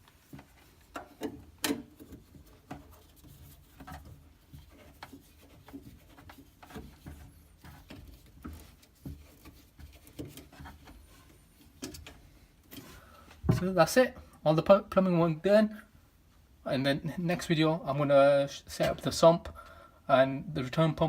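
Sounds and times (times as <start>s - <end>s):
plastic fittings clicking and rubbing: 0.0s - 13.0s.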